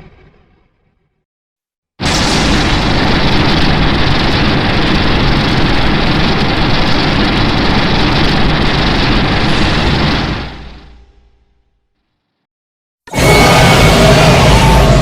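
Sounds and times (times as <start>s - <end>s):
monster rumbling roar: 13.1s - 15.0s.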